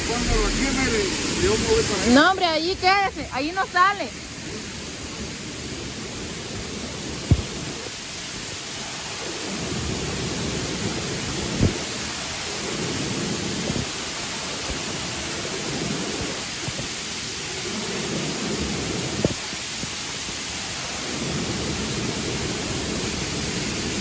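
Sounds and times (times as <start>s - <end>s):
short low thumps: 0.0s - 4.1s
river water rushing: 0.0s - 24.0s.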